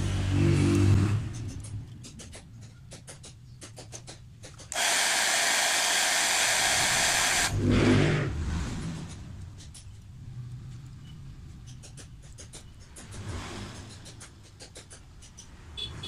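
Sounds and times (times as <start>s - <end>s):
hair dryer blowing: 4.7s - 7.6s.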